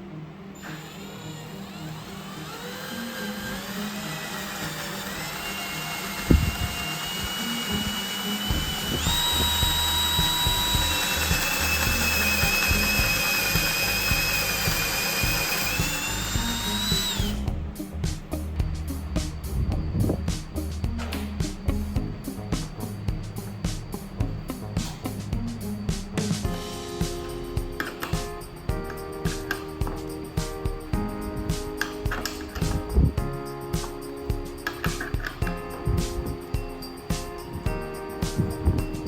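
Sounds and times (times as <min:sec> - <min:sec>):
power tool motor whining: 0:00.6 - 0:17.5.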